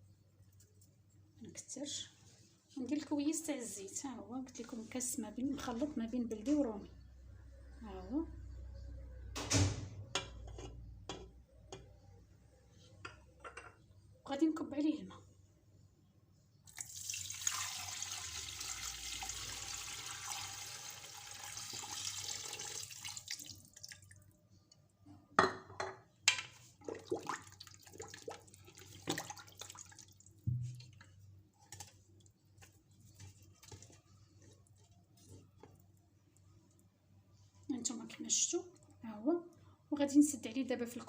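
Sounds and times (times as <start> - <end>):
cookware knocking and clinking: 13.1 - 13.8, 25.4 - 26.6
water pouring into a pot: 16.7 - 24.3, 26.8 - 31.0.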